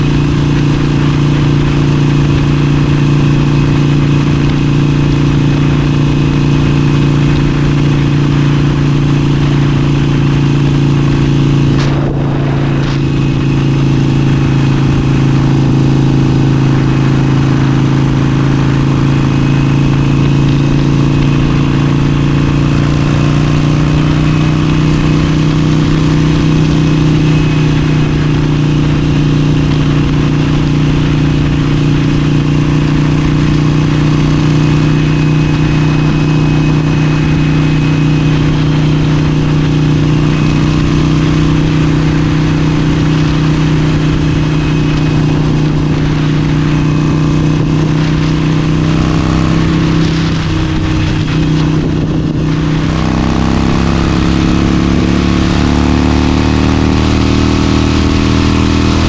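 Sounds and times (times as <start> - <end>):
motorcycle engine cruising: 0.0 - 59.0
wind and road noise: 0.0 - 59.0.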